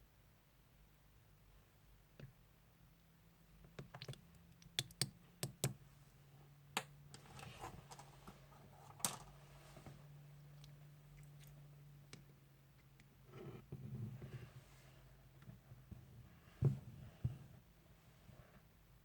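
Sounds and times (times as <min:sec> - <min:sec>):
slime clicking and popping: 0:03.9 - 0:05.7.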